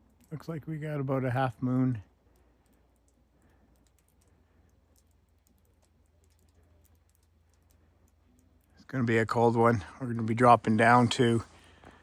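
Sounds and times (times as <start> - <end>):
low steady hum: 0.0 - 12.0
faint light ticks: 2.2 - 8.9.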